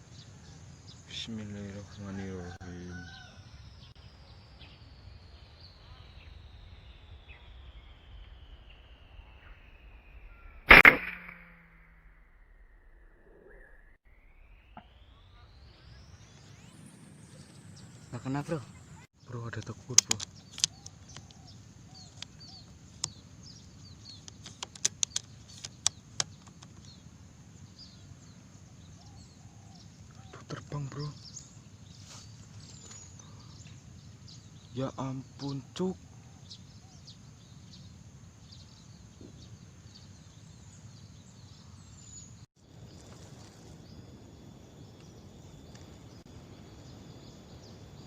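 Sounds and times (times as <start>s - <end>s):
high falling bird chirps: 0.0s - 48.0s
sharp clicks: 19.6s - 21.4s, 22.1s - 23.2s, 24.0s - 27.0s.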